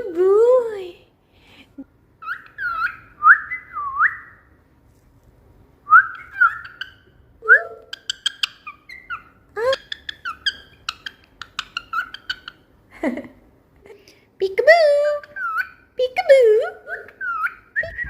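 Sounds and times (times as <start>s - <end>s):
cockatiel whistling: 2.2s - 4.4s, 5.9s - 7.0s.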